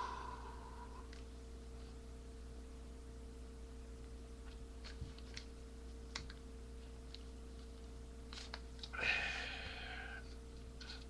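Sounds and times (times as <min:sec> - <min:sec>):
person's sharp hissing exhale: 0:00.0 - 0:01.0, 0:09.0 - 0:10.2.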